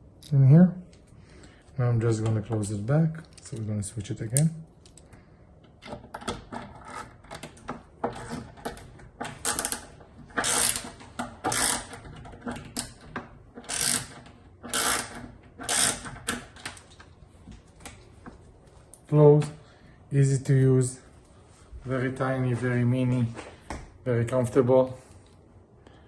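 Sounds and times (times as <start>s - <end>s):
ratchet screwdriver clicking: 10.4s - 10.8s, 13.7s - 16.1s.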